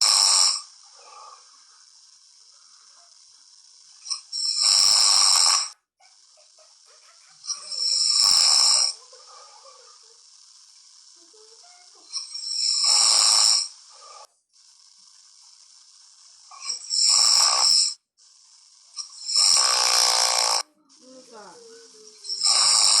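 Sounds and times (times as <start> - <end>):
faint steady hiss: 0.0 - 17.6
person snoring: 0.0 - 23.0.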